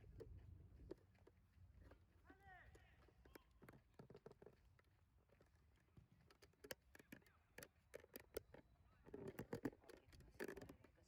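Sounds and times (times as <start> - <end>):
faint clicks and taps: 2.6 - 11.0.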